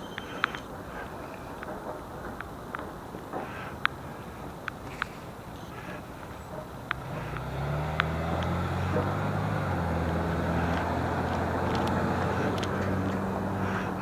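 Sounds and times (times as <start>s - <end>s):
sharp clicks: 4.6s - 14.0s
vehicle engine running: 5.2s - 14.0s.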